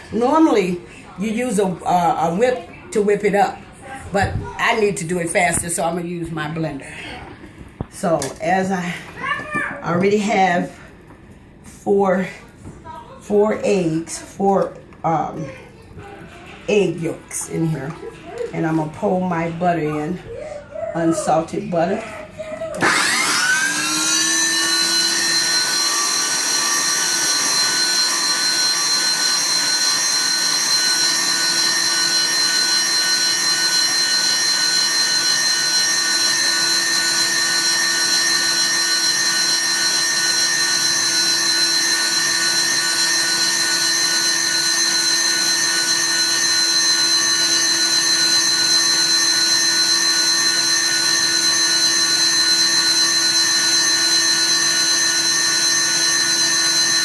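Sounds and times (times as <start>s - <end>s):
blender motor whining: 22.7s - 57.0s.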